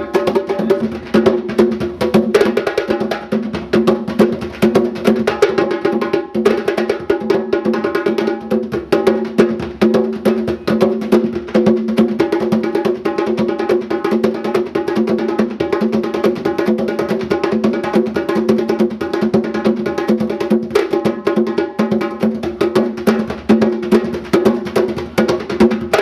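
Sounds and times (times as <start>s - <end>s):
percussion-led music: 0.0s - 26.0s.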